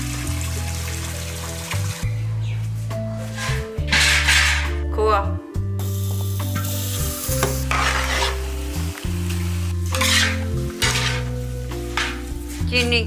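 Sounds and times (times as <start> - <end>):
pan sizzling: 3.2 - 4.8, 5.8 - 13.0
spatula scraping a pan: 3.2 - 4.8, 7.4 - 8.8, 9.8 - 12.7.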